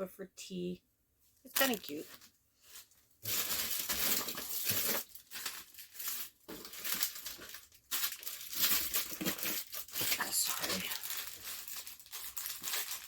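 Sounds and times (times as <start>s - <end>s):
plastic packaging crinkling: 1.4s - 13.0s.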